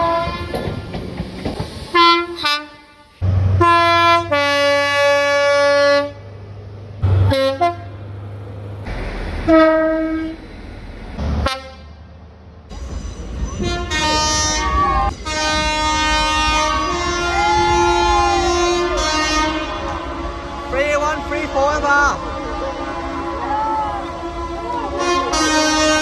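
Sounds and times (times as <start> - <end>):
train horn blasts: 0.0 - 0.6, 1.9 - 6.2, 7.2 - 8.0, 9.4 - 10.4, 11.4 - 12.0, 13.5 - 26.0
low rumble of trains: 0.0 - 26.0.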